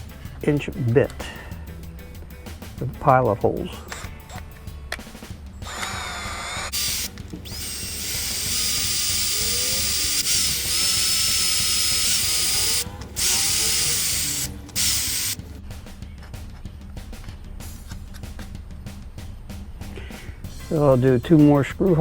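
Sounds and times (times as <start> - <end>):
power drill drilling through metal: 5.6 - 15.4.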